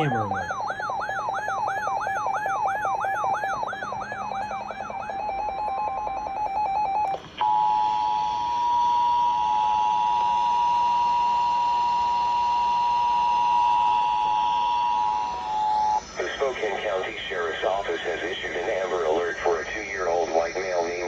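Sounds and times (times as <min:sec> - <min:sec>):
fast pulsing beep: 0:00.0 - 0:07.1
two-tone alert signal: 0:00.0 - 0:07.1
radio hiss: 0:16.0 - 0:21.0.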